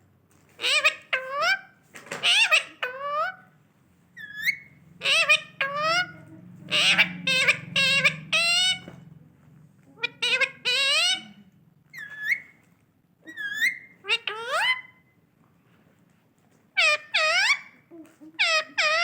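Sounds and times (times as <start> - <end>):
parrot calling: 0.6 - 3.5, 4.2 - 9.0, 10.0 - 12.6, 13.2 - 15.1, 16.7 - 17.8, 18.4 - 19.0.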